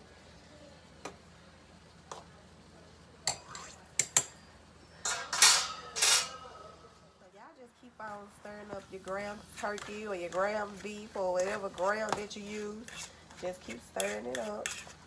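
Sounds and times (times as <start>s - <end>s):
metal utensil clinking on pan: 5.0s - 6.8s
utensil scraping across pan: 5.0s - 6.8s, 8.4s - 15.0s.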